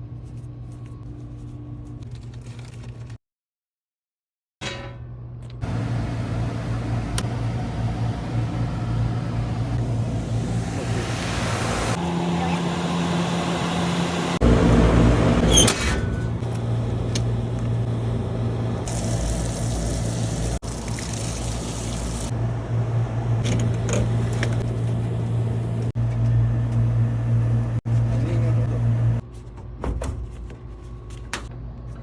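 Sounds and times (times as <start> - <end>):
air conditioning unit humming: 5.2 - 15.4.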